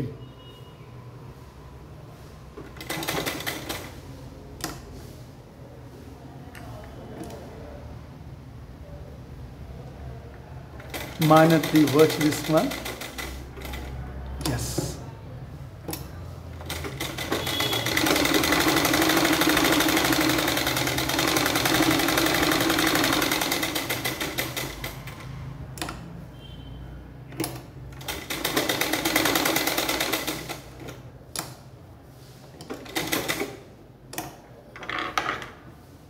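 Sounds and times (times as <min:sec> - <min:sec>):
sewing machine stitching: 0:02.6 - 0:04.0, 0:10.8 - 0:14.7, 0:15.9 - 0:26.0, 0:27.4 - 0:31.0, 0:32.6 - 0:33.6.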